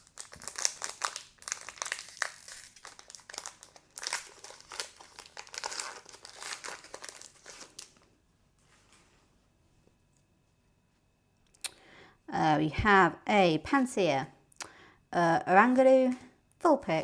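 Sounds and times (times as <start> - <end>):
card packaging crinkling: 0.0 - 8.1.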